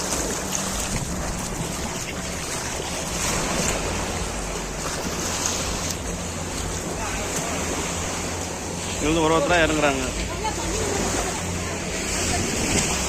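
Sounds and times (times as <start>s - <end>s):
wind buffeting microphone: 0.0s - 7.6s
boat engine running: 0.0s - 13.0s
waves washing against hull: 0.0s - 13.0s.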